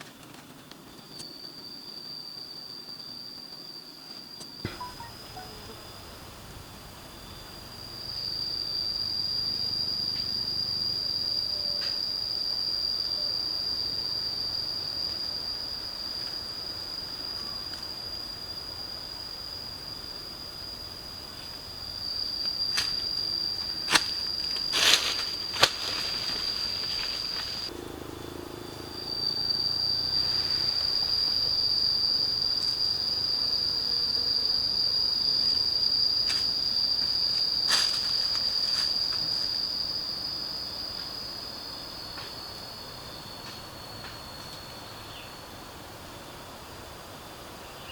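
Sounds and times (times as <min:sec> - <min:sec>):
high-pitched insect drone: 0:01.0 - 0:45.5.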